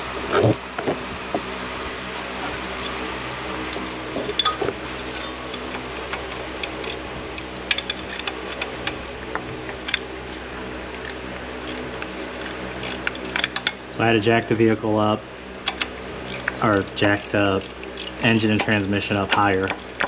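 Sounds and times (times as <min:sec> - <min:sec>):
background hum: 0:00.0 - 0:20.0
metal tools clinking: 0:00.3 - 0:03.0, 0:03.7 - 0:08.9.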